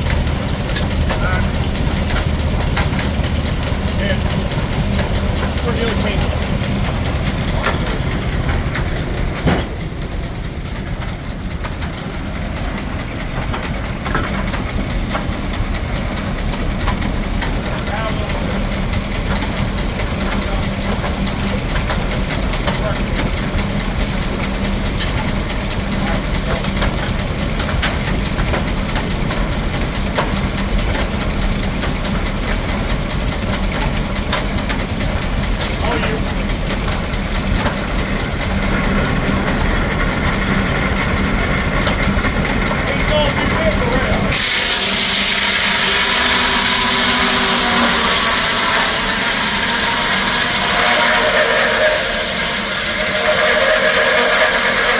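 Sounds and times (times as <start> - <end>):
sawmill running: 0.0 - 54.9
steam engine rumbling: 0.0 - 54.9
sharp knocks: 4.9 - 12.1.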